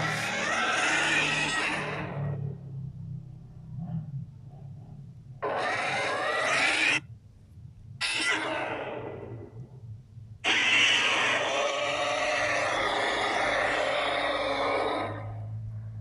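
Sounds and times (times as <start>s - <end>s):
animal-like creature calls: 0.0s - 2.6s, 5.4s - 7.1s, 8.0s - 9.6s, 10.4s - 15.5s.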